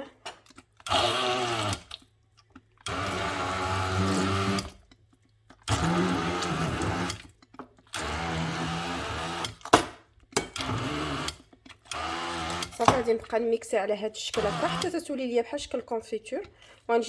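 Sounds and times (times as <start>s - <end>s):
electric blender pulsing: 0.8s - 2.0s, 2.9s - 4.8s, 5.7s - 7.2s, 7.9s - 9.8s, 10.6s - 13.2s, 14.3s - 15.1s.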